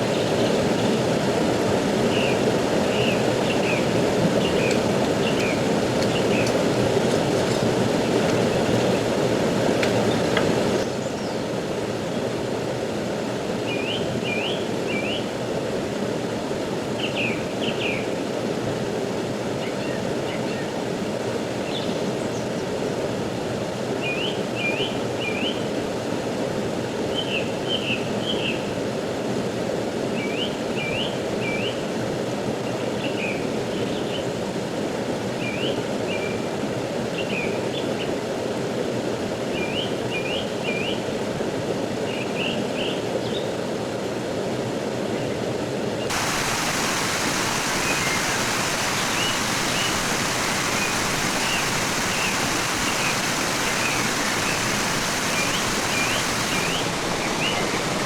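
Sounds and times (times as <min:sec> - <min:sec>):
rushing stream water: 0:00.0 - 0:25.1, 0:43.6 - 0:58.0
small bird chirping: 0:46.1 - 0:58.0.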